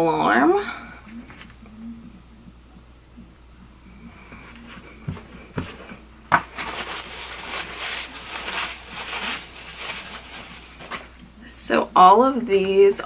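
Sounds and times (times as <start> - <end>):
scratchy rubbing: 3.8 - 11.2.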